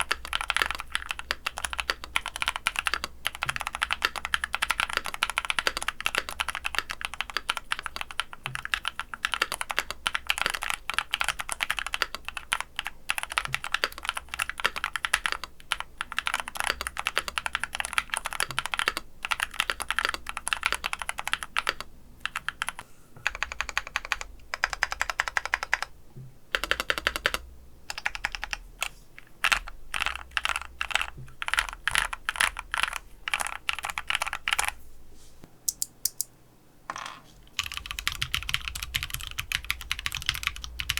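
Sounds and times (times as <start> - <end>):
mechanical keyboard typing: 0.0 - 25.9, 26.5 - 34.8, 35.7 - 36.3, 37.6 - 40.9.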